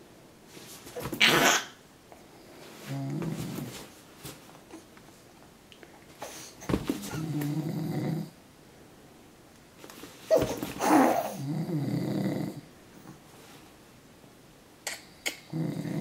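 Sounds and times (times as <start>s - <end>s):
man snoring: 7.1s - 8.3s, 11.4s - 12.7s, 15.4s - 16.0s.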